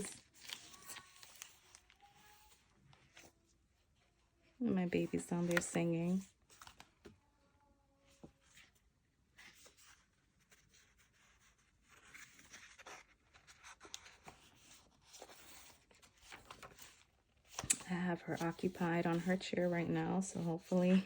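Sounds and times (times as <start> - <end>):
paper pages rustling: 0.0 - 4.1, 5.0 - 7.2, 8.1 - 21.0
child singing faintly: 0.6 - 2.7, 7.1 - 8.4.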